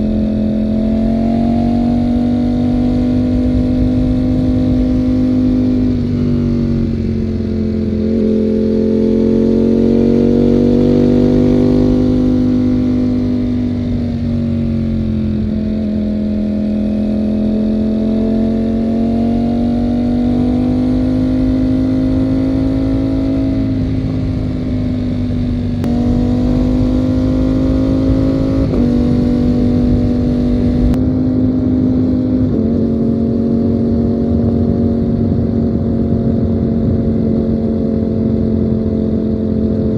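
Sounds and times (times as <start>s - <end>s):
motorcycle engine changing gears: 0.0s - 31.0s.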